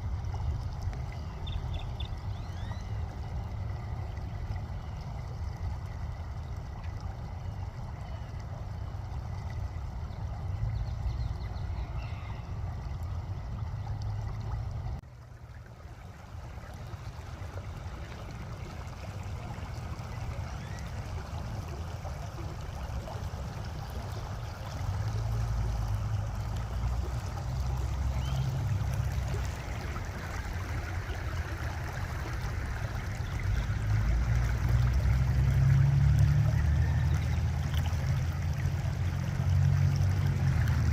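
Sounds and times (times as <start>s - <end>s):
creek water rushing: 0.0s - 40.9s.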